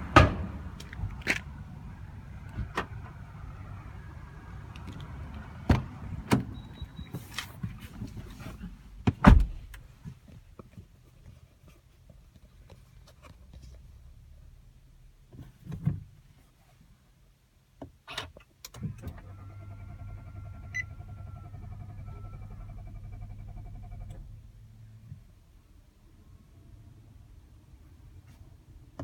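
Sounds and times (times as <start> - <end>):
loud thump: 0.0 - 0.7.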